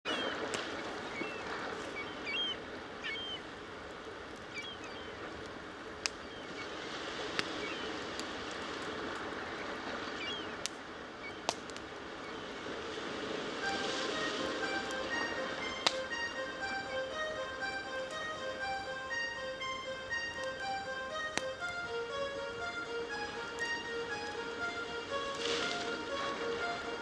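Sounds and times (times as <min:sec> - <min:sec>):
bird chirps: 0:02.0 - 0:03.4
wood fire crackling and popping: 0:05.4 - 0:06.2, 0:07.3 - 0:09.3, 0:11.4 - 0:12.0
steady rushing noise: 0:12.7 - 0:27.0.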